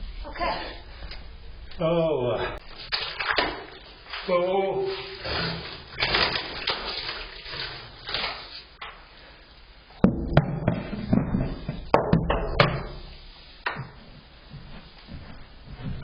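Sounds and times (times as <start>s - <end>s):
sharp knocks and clunks: 10.0s - 13.0s.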